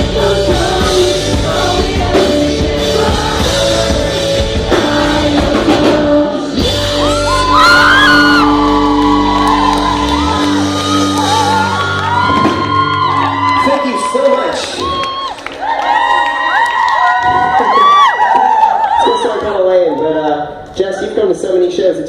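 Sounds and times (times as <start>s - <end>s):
person singing: 0.0s - 11.8s
rock band playing loudly: 0.0s - 15.0s
crowd shouting and whooping: 6.6s - 20.2s.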